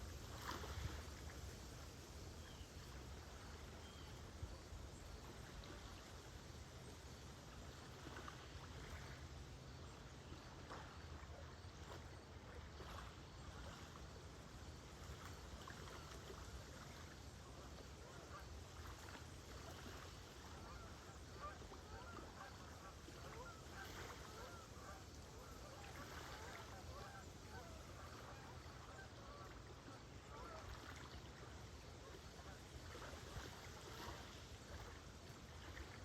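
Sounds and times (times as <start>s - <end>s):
small lake waves washing: 0.0s - 36.0s.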